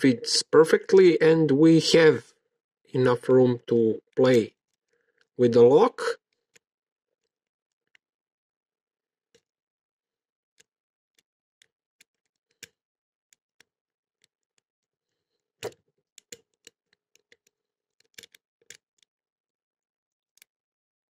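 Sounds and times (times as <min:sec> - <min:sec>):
lock picking metallic clicks: 0:15.6 - 0:19.1.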